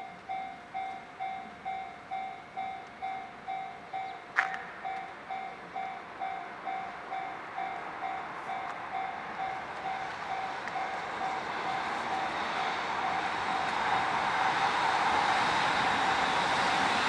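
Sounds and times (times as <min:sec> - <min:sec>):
level crossing warning bell: 0:00.0 - 0:14.1
approaching train: 0:00.0 - 0:17.0.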